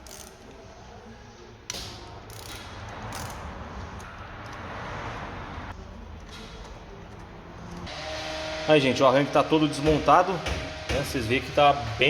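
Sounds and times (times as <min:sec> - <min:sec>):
metal parts clicking and rattling: 0:01.7 - 0:04.6, 0:05.9 - 0:07.9.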